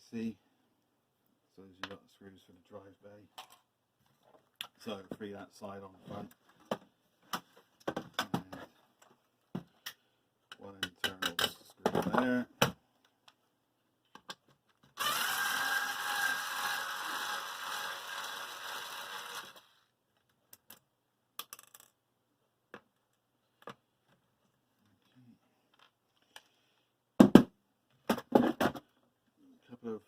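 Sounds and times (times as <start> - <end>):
electric screwdriver whirring: 15.0 - 19.8.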